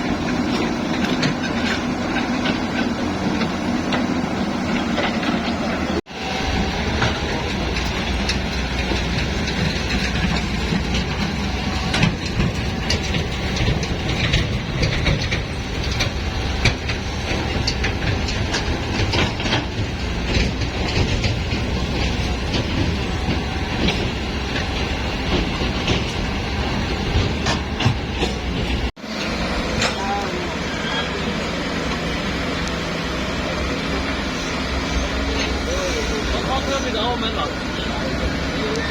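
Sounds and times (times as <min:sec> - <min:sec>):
construction machinery rumbling: 0:00.0 - 0:38.9
metallic clanks and rattles: 0:06.8 - 0:28.9.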